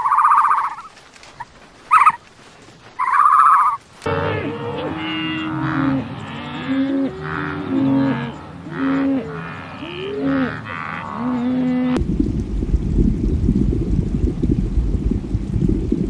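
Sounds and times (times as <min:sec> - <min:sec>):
cattle mooing: 0:03.0 - 0:12.0.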